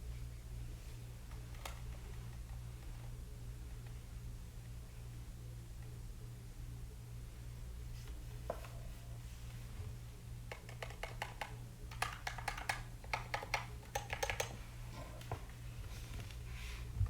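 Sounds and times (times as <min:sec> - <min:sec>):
mechanical keyboard typing: 0:10.5 - 0:14.6.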